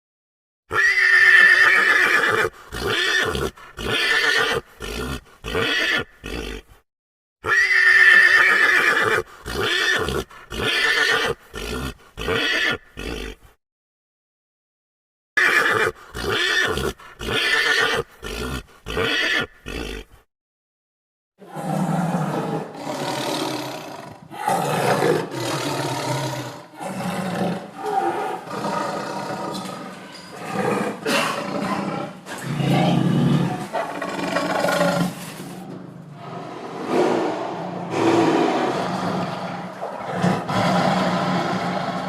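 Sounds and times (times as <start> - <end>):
horse neighing: 0.7 - 6.8, 7.4 - 13.5, 15.4 - 20.2.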